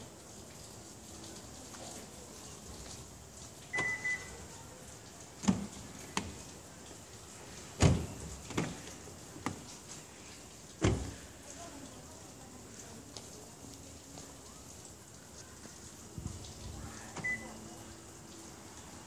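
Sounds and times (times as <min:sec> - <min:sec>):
car alarm beep: 0:03.7 - 0:04.3, 0:17.2 - 0:17.6
car door and lock clunks: 0:10.8 - 0:11.1.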